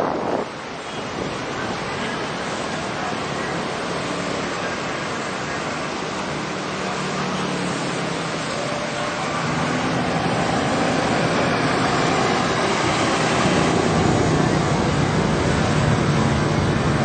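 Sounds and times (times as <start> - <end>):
wind on microphone: 0.0 - 2.9
road traffic roar: 0.0 - 17.0.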